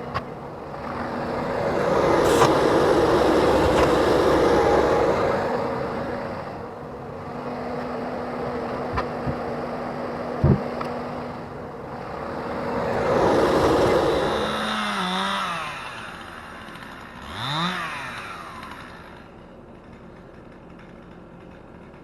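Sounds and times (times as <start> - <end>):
broad rush of noise: 0.0 - 16.4
heavy machine humming: 0.0 - 22.0.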